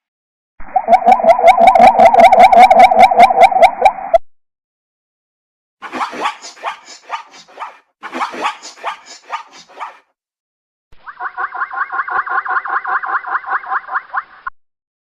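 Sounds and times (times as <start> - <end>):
muffled pulsed calls: 0.7 - 3.9.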